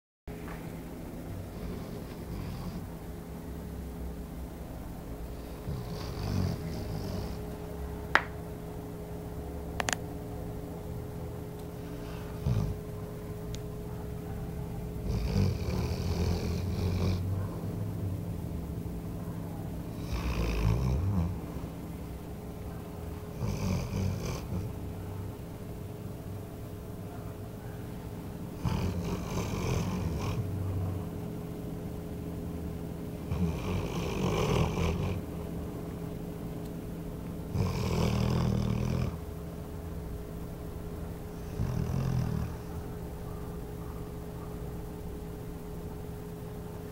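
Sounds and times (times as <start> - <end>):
small dog snoring: 1.4 - 2.9, 5.4 - 7.5, 12.1 - 12.8, 15.0 - 17.3, 19.9 - 21.4, 23.3 - 24.8, 28.6 - 30.4, 33.2 - 35.2, 37.5 - 39.2, 41.4 - 42.7.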